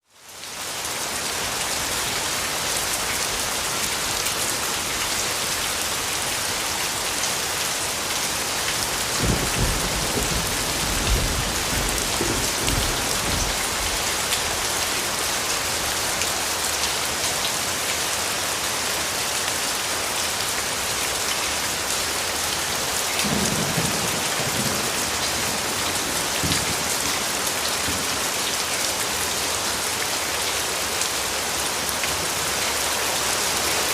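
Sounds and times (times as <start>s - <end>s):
rain pattering: 0.2s - 33.9s
thunder rolling: 9.1s - 14.3s.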